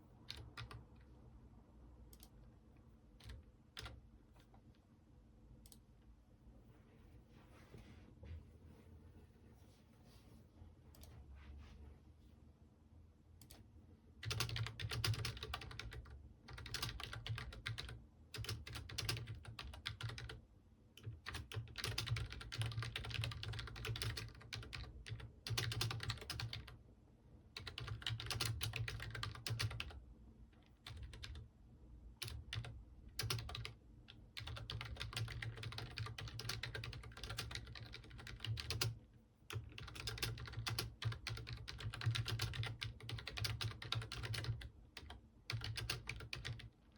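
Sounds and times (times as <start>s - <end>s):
computer keyboard typing: 0.2s - 1.1s, 3.2s - 4.0s, 14.2s - 20.4s, 21.0s - 26.8s, 27.6s - 30.0s, 30.6s - 31.4s, 32.2s - 46.8s.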